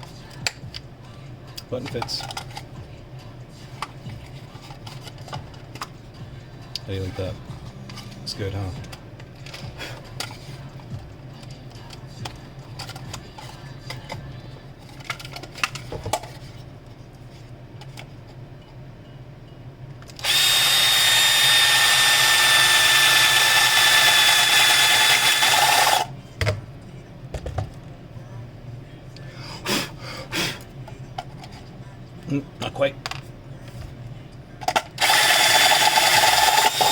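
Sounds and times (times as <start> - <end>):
electric drill whining: 20.2 - 26.1, 35.0 - 36.9.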